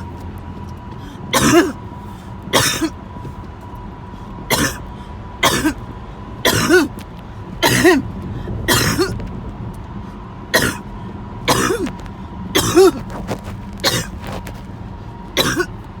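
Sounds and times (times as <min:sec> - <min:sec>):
person coughing: 0:01.3 - 0:01.8, 0:02.5 - 0:03.0, 0:04.5 - 0:05.8, 0:06.4 - 0:07.0, 0:07.6 - 0:08.1, 0:08.7 - 0:09.2, 0:10.5 - 0:10.9, 0:11.5 - 0:13.2, 0:13.8 - 0:14.4, 0:15.4 - 0:15.8.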